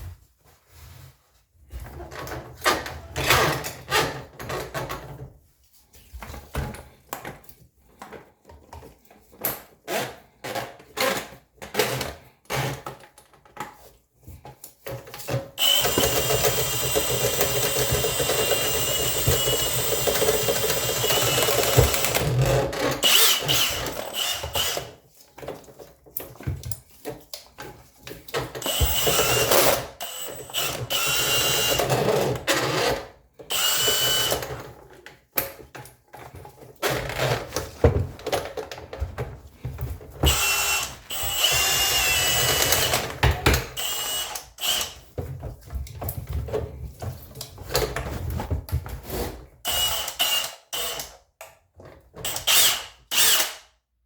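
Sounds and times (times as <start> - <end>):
small power tool motor whining: 15.6 - 22.3, 28.6 - 31.9, 40.3 - 43.1, 43.8 - 45.0
tools knocking on plumbing: 15.8 - 22.4, 28.6 - 29.5.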